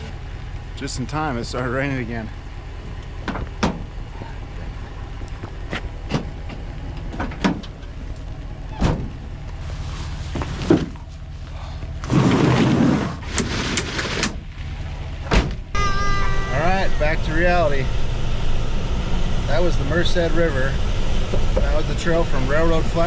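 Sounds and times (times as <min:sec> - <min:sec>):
vehicle engine idling: 0:00.0 - 0:12.2, 0:14.4 - 0:23.0
sharp knocks and clunks: 0:03.2 - 0:03.9.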